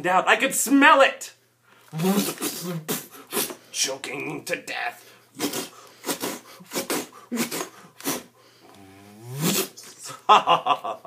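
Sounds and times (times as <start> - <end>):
man making choking sounds: 2.0 - 3.6, 5.4 - 10.2.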